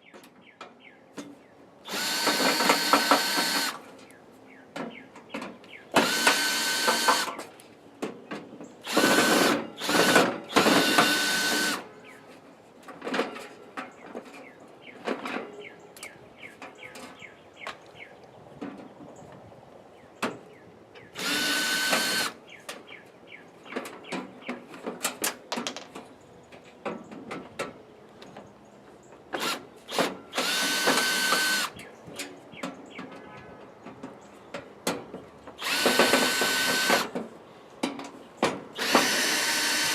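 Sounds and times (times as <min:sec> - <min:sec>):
power drill whining: 0:01.9 - 0:03.8, 0:06.0 - 0:07.4, 0:08.8 - 0:11.8, 0:21.2 - 0:22.4, 0:29.4 - 0:31.8, 0:35.6 - 0:37.1, 0:38.8 - 0:39.9.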